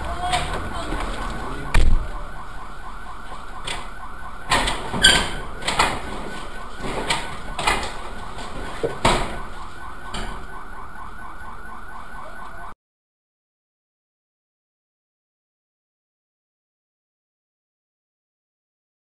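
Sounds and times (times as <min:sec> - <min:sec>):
warbling alarm tone: 0:00.0 - 0:12.8.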